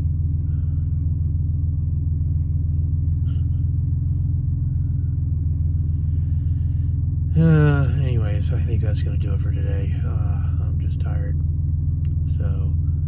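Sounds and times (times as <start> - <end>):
vehicle cabin road rumble: 0.0 - 13.0.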